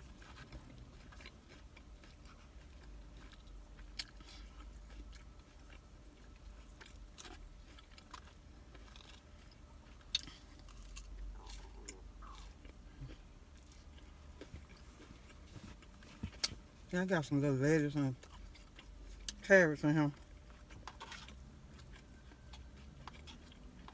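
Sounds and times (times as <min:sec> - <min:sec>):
person chewing food: 0:00.0 - 0:23.9.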